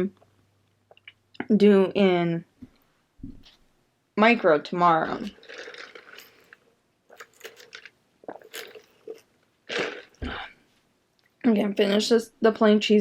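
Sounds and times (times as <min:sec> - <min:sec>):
person chewing food: 0:05.4 - 0:10.5.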